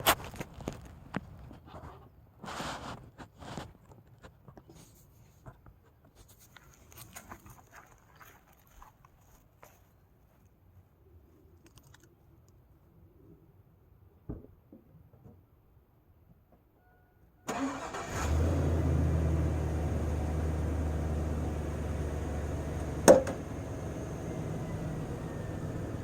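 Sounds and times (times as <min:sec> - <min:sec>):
engine cranking and idling: 0:17.5 - 0:26.0
thump: 0:23.0 - 0:23.4.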